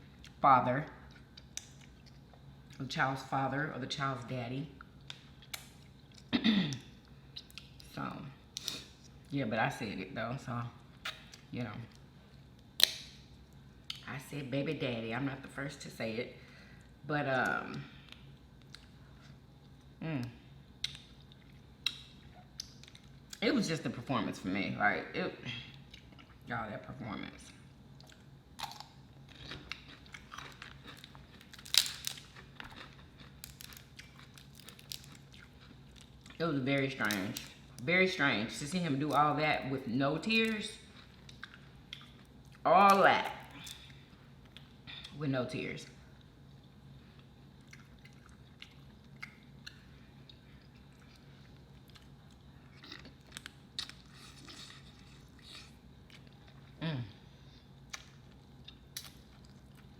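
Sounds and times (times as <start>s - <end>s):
faint steady hum: 0.0s - 59.9s
chewing food: 1.0s - 2.9s, 4.7s - 8.0s, 20.8s - 23.4s, 25.7s - 26.5s, 27.3s - 36.4s, 40.5s - 45.2s, 46.1s - 56.8s, 57.5s - 59.9s
crisp crunches: 28.6s - 36.4s.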